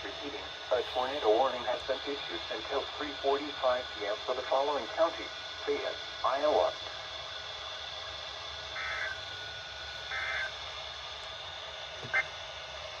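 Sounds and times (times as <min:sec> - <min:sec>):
radio static hiss: 0:00.0 - 0:06.8.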